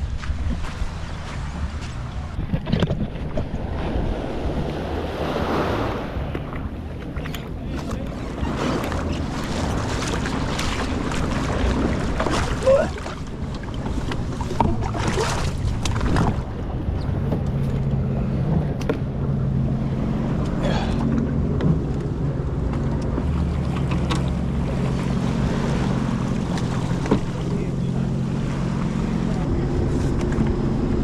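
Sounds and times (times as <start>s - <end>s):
wind on microphone: 0.0s - 20.6s
water sloshing: 0.0s - 31.0s
watercraft engine humming: 0.0s - 31.0s.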